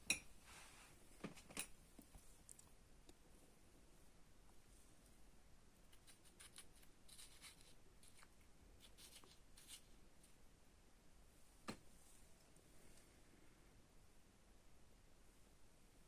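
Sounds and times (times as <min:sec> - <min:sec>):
faint scratchy rustling: 0:00.4 - 0:02.8.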